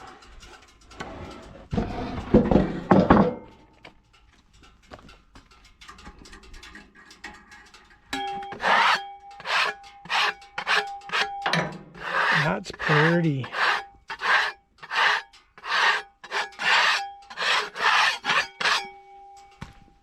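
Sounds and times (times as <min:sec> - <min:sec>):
wood scraping and knocking: 0:01.0 - 0:03.5
rough rubbing on wood: 0:08.5 - 0:11.3, 0:12.0 - 0:18.8.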